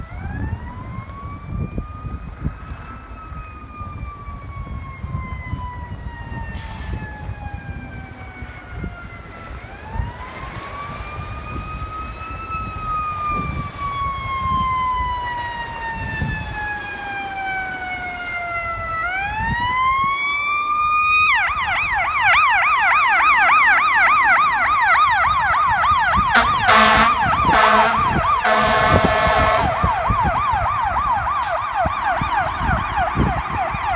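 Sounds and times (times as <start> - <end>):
fire truck siren: 0.0 - 33.9
low traffic rumble: 0.0 - 33.9
air horn blasts: 26.3 - 30.1.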